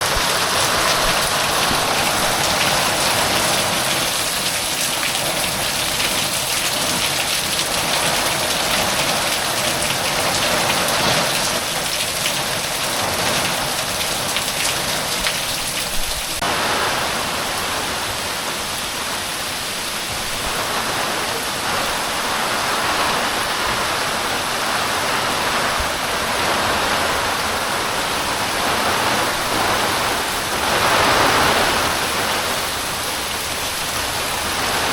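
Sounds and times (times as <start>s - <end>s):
heavy rain pouring: 0.0s - 34.9s.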